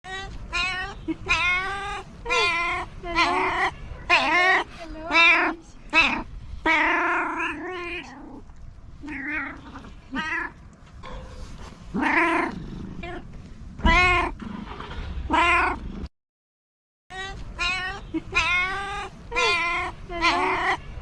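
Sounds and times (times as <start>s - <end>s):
cat meowing: 0.1s - 8.2s, 9.0s - 10.6s, 13.8s - 14.4s, 17.1s - 21.0s.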